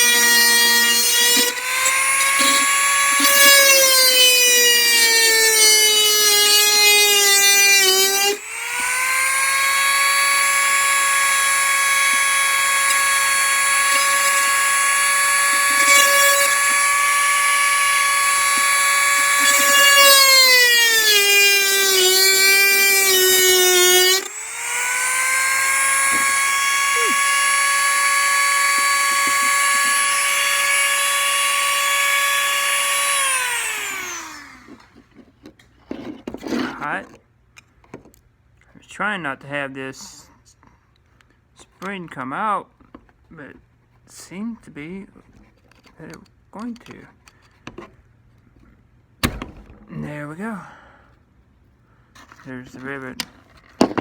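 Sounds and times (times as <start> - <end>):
rotary tool whining while drilling: 0.0 - 35.3.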